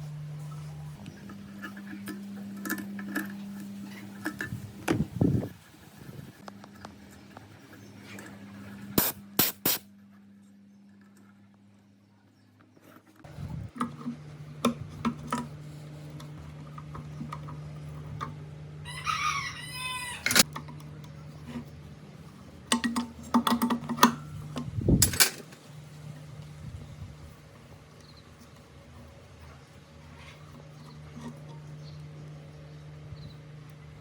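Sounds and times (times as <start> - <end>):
steady low hum: 0.0 - 19.0, 20.2 - 34.0
rooster crowing: 18.8 - 20.4.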